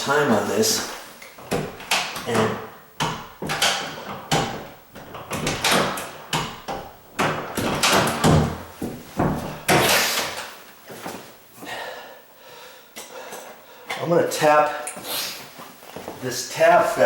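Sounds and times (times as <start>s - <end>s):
door latch rattle: 1.5s - 8.6s
door latch knocking and clicking: 1.5s - 9.9s.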